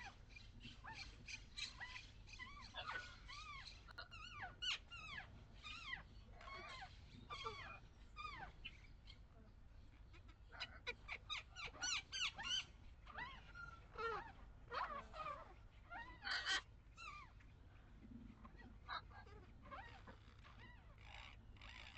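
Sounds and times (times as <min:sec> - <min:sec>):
low rumble of wind: 0:00.0 - 0:21.9
high-pitched animal calls: 0:00.8 - 0:08.8, 0:10.2 - 0:17.4.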